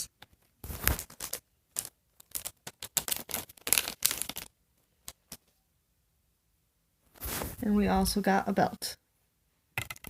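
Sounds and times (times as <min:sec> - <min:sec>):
packaging rustling and crinkling: 0:00.4 - 0:04.5.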